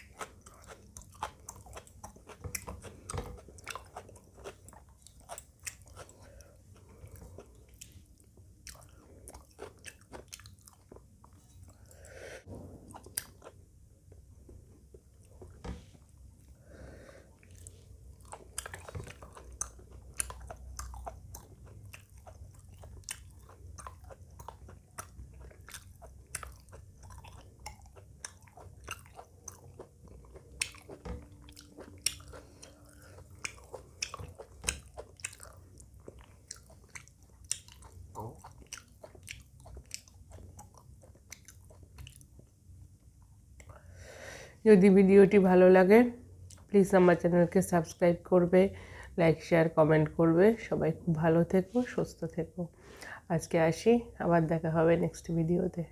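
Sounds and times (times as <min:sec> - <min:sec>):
chewing and biting food: 0:00.0 - 0:11.9, 0:12.6 - 0:13.6, 0:17.3 - 0:42.6.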